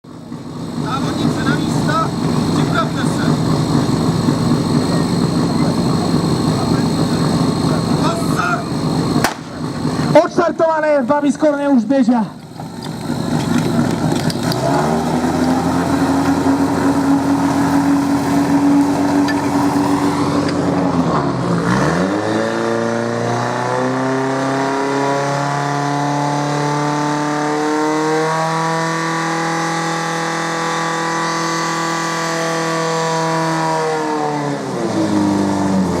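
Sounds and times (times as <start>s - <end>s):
pump engine running at high revs: 0.0s - 10.7s, 12.3s - 36.0s.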